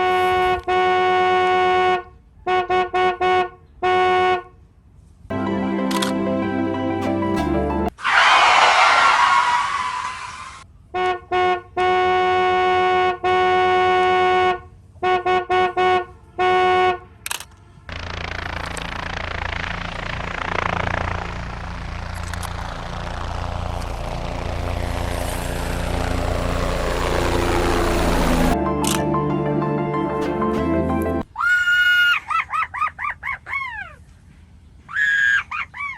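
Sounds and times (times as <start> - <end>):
engine rumbling sound effect: 5.3 - 10.0, 17.9 - 31.2.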